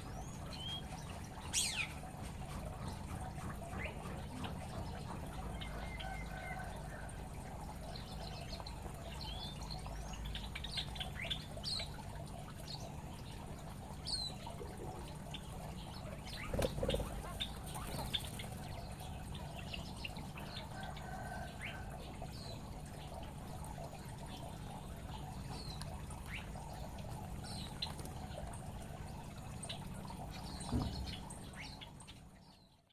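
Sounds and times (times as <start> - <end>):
small birds chirping: 14.0 - 23.2.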